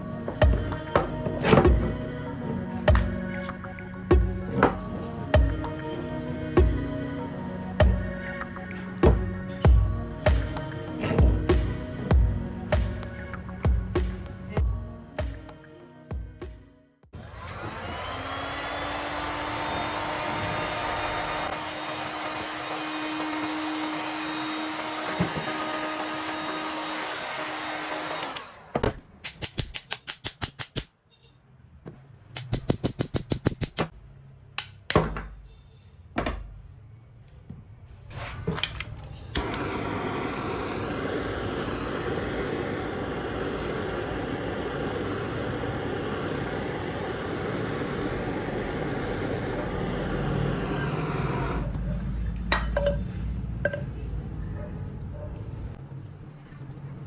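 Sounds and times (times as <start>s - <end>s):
power tool running: 17.1s - 28.8s, 39.3s - 51.8s
steady machine noise: 39.4s - 51.7s.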